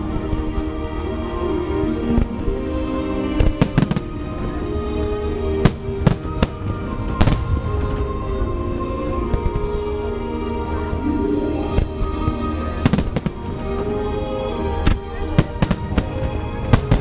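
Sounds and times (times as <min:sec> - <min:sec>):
music with long held notes: 0:00.0 - 0:17.0
fireworks bursting: 0:03.4 - 0:10.0, 0:11.7 - 0:14.1, 0:14.7 - 0:17.0.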